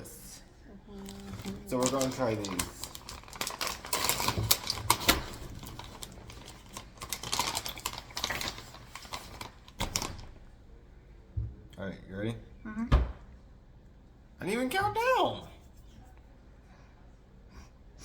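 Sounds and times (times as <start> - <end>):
plastic snack bag crinkling: 1.0 - 10.4.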